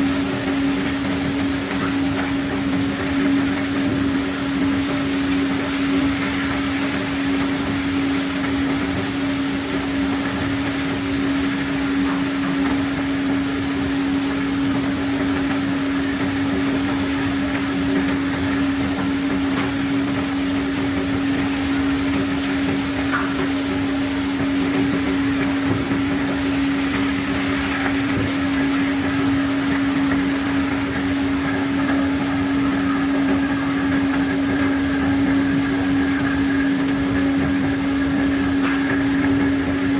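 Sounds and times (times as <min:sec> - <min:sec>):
even mechanical noise: 0:00.0 - 0:39.9
strong constant hum: 0:00.0 - 0:39.9.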